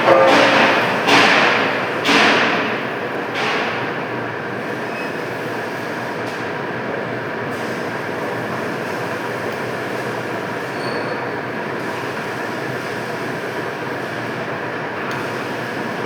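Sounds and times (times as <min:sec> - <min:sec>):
ringing metal clanks: 0:00.0 - 0:02.1
steady machine drone: 0:00.0 - 0:04.9.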